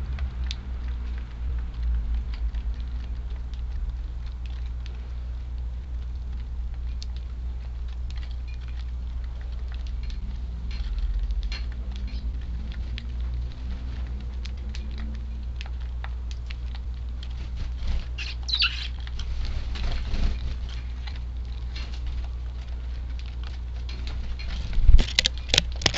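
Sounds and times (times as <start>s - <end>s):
sparrows pecking and hopping: 0.0s - 25.9s
wind rumbling on microphone: 0.0s - 25.9s
short high bird chirp: 18.2s - 18.9s.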